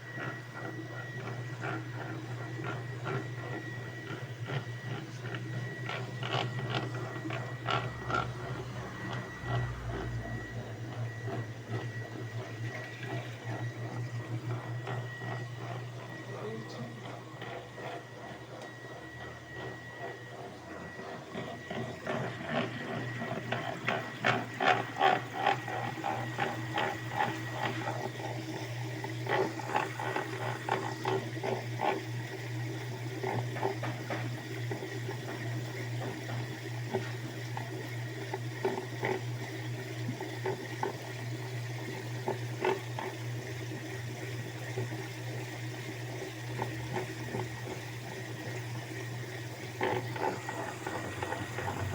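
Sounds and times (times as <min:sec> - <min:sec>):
washing machine motor hum: 0:00.0 - 0:51.9
water churning: 0:36.3 - 0:51.9.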